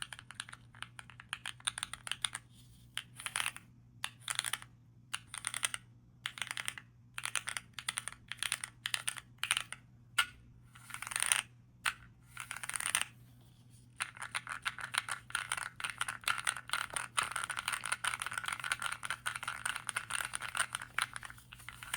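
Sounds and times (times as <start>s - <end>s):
mechanical keyboard typing: 14.0s - 21.9s.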